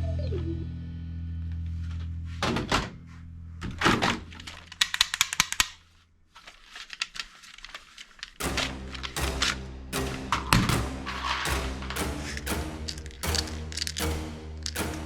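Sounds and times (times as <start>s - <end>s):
toy gun plastic clicks: 4.3s - 5.9s, 6.5s - 8.4s
background music with beat: 8.4s - 15.0s.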